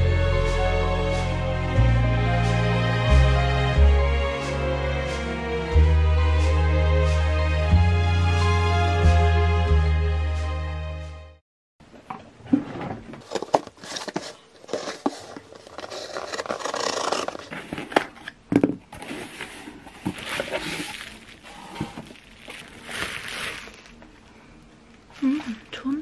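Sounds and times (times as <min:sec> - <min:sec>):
scraping and rustling: 0:12.4 - 0:24.2.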